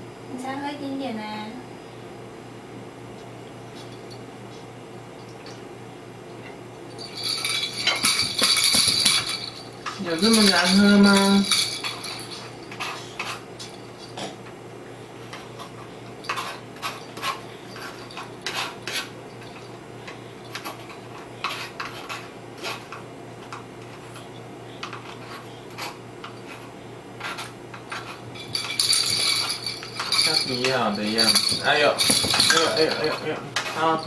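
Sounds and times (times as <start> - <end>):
faint steady hum: 0.0 - 34.0
tableware clinking: 7.0 - 14.4, 27.3 - 34.0.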